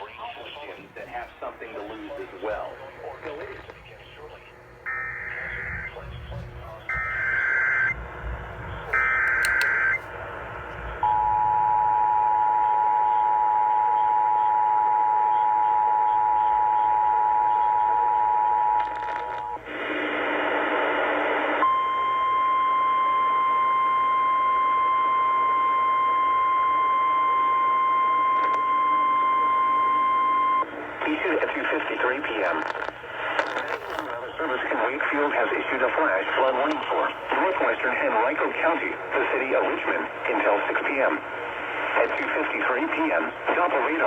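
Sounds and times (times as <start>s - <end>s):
steady warning alarm tone: 3.8s - 19.6s, 21.6s - 30.7s.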